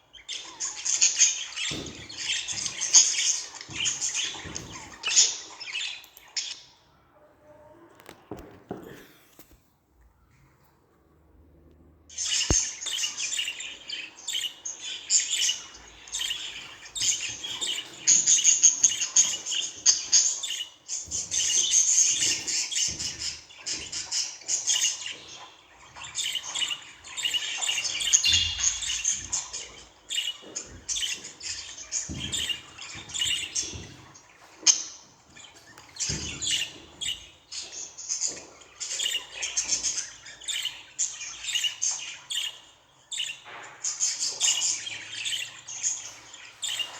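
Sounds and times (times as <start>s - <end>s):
budgerigar warbling and chattering: 12.1s - 34.0s.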